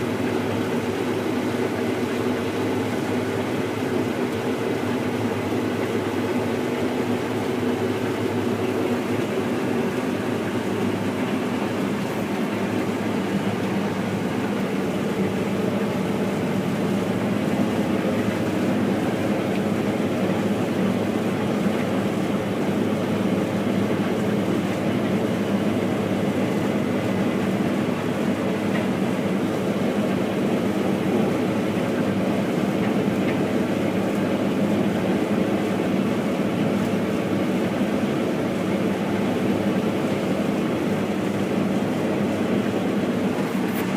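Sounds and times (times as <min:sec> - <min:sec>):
combine harvester running: 0:00.0 - 0:43.9.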